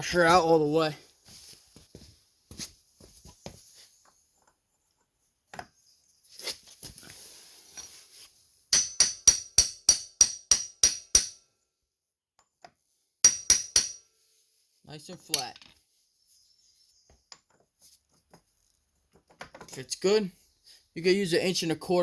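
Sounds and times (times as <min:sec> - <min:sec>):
hammer striking metal socket: 0:08.8 - 0:11.4, 0:13.2 - 0:14.0.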